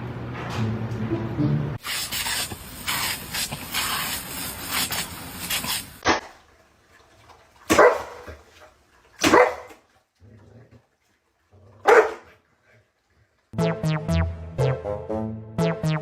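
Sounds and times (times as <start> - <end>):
music: 0.6 - 1.8, 13.6 - 16.0
dog barking: 7.7 - 8.3, 9.2 - 9.8, 11.8 - 12.4.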